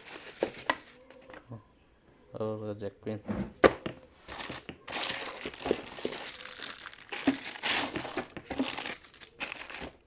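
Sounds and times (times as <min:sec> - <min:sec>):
plastic packaging crinkling: 0:00.0 - 0:01.2, 0:04.3 - 0:10.0.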